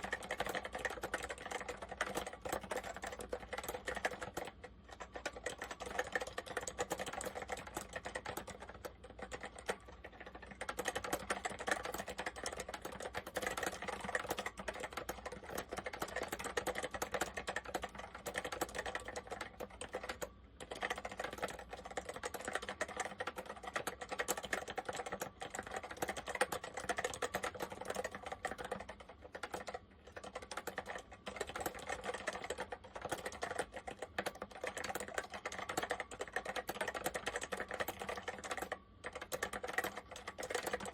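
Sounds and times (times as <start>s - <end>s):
fast typing on mechanical keyboard: 0.0s - 40.9s.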